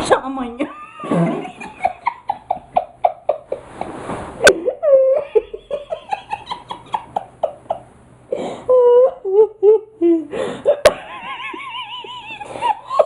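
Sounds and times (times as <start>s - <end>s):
person laughing hard: 0.8s - 3.6s, 4.4s - 7.9s, 8.7s - 13.0s
high-pitched squeal of laughter: 4.4s - 7.1s.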